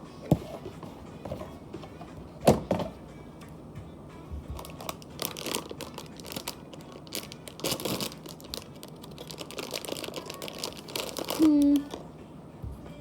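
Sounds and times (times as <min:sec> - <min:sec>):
plastic packaging crinkling: 0:04.6 - 0:12.0.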